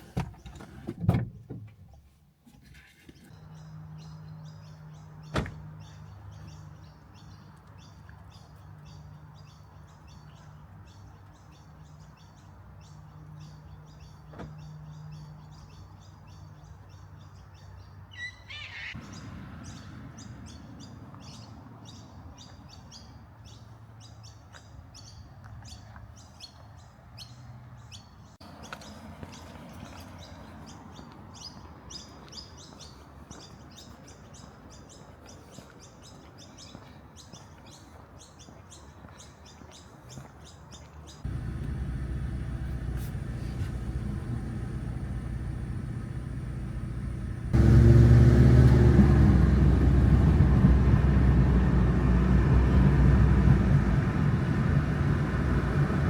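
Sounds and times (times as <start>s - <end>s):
birds chirping: 3.2s - 24.3s, 24.9s - 55.9s
low steady hum: 41.3s - 51.9s.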